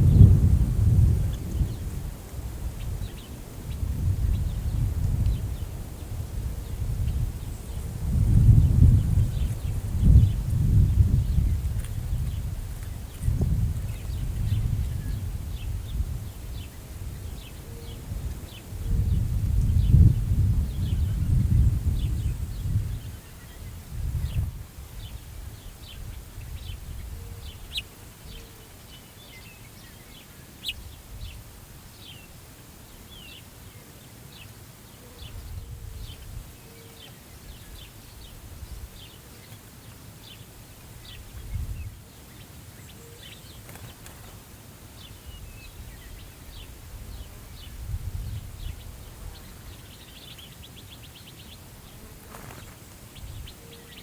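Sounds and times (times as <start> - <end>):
wind gusts buffeting microphone: 0.0 - 27.8, 45.2 - 49.9
steady wind: 0.0 - 54.0
small birds chirping: 2.7 - 54.0.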